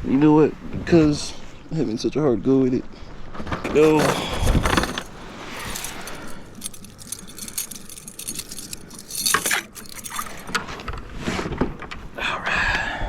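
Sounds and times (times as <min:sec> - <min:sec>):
fishing gear clicking: 0:04.0 - 0:10.8.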